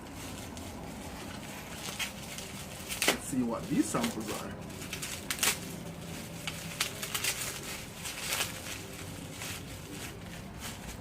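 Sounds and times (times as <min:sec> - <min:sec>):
packaging crinkling and rustling: 0:00.0 - 0:11.0.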